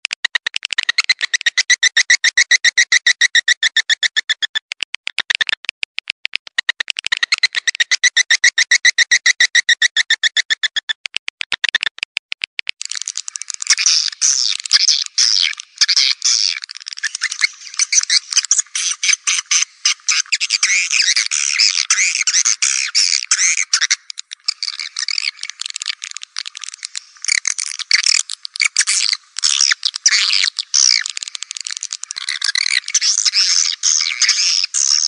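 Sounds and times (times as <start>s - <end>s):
swiftlets twittering: 12.8s - 35.0s.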